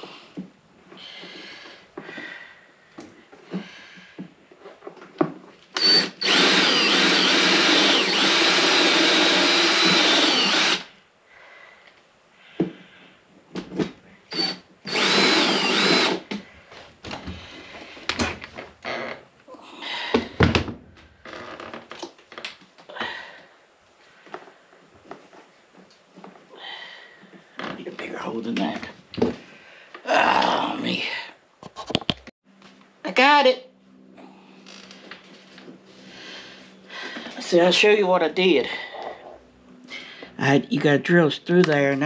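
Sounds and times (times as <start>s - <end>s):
power drill whining: 5.8s - 10.9s, 14.3s - 16.4s.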